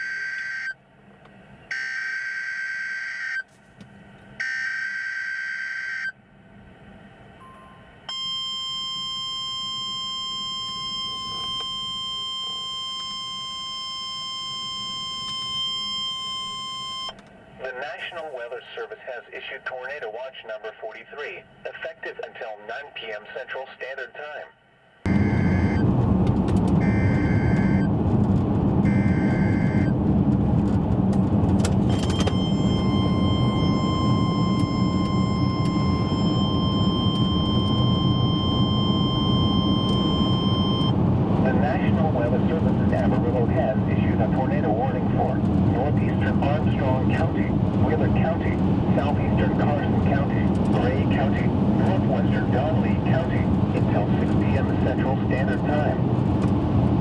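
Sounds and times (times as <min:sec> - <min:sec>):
vehicle road noise: 0:00.0 - 0:08.2, 0:25.1 - 0:57.0
shrill alarm tone: 0:08.1 - 0:17.2, 0:25.1 - 0:25.8, 0:32.1 - 0:41.0.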